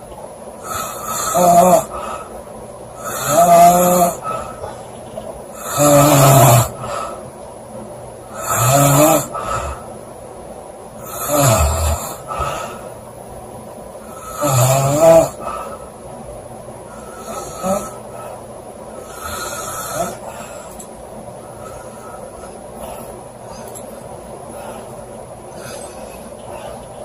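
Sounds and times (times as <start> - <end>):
woman snoring loudly: 0.6 - 2.3, 3.0 - 4.6, 5.6 - 7.2, 8.3 - 9.9, 11.0 - 12.8, 14.1 - 15.6, 17.0 - 18.2, 19.0 - 20.5.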